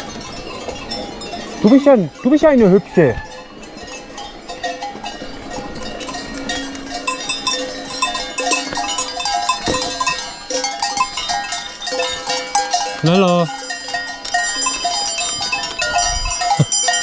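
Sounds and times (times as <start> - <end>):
cowbells clanking: 0.0 - 17.0.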